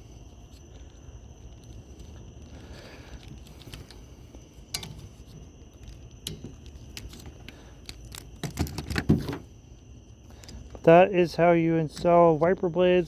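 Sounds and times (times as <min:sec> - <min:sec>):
plastic parts clicking: 0:05.8 - 0:09.4
parts knocking into place: 0:08.4 - 0:09.5.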